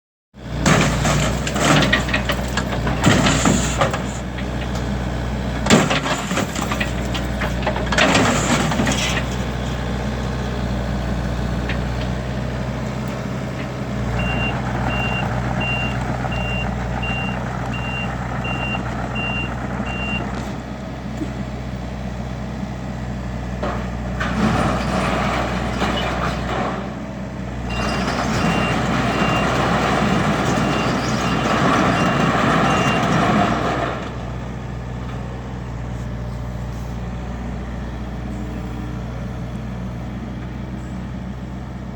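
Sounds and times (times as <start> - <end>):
diesel machinery running: 0.4 - 41.9
reversing alarm beeping: 14.2 - 20.3, 27.7 - 33.2.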